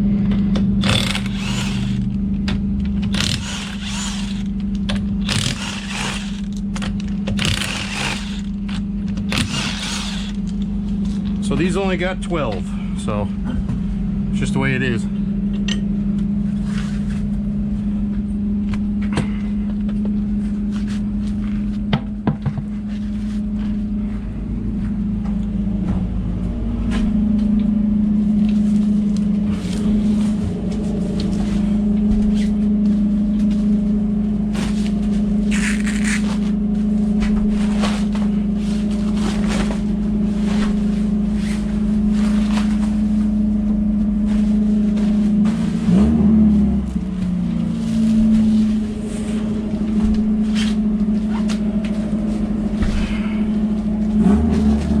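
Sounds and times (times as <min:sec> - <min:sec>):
motor humming: 0:00.0 - 0:55.0
knocks and clanks of tools: 0:21.9 - 0:22.7.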